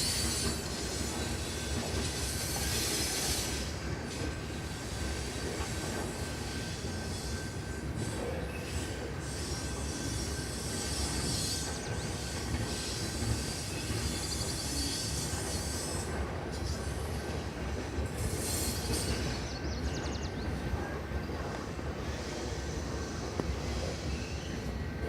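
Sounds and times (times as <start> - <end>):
freight train rumbling: 0.0 - 25.0
wheel squeal and hiss: 0.0 - 25.0.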